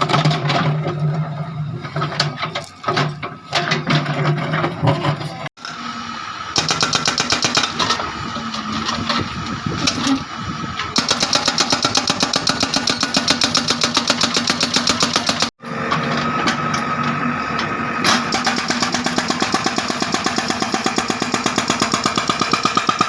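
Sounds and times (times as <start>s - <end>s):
diesel engine running: 0.0s - 23.0s
hydraulic breaker hammering: 6.6s - 8.0s, 11.0s - 17.0s, 18.0s - 23.0s.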